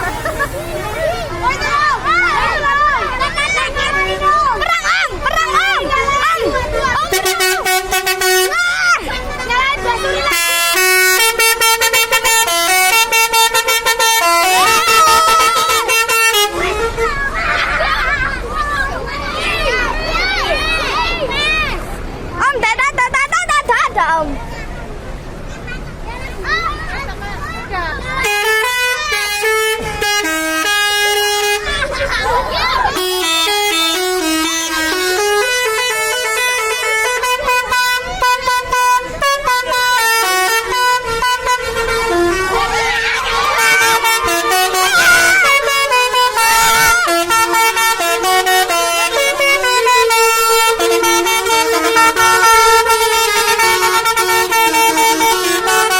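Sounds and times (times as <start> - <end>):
musical bus air horn: 3.4 - 17.6, 28.2 - 55.9.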